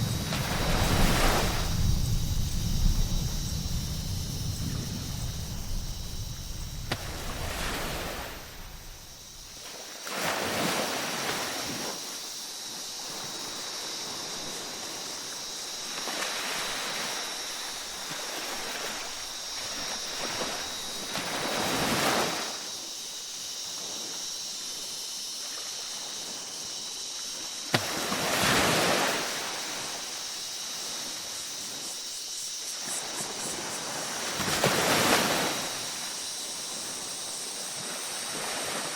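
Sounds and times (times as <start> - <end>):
waves breaking on a beach: 0.0 - 38.9.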